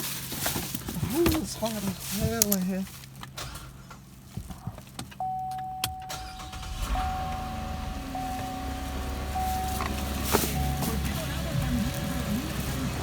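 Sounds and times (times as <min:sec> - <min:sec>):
car electronic warning tone: 0:05.2 - 0:13.0
low hum: 0:05.2 - 0:13.0.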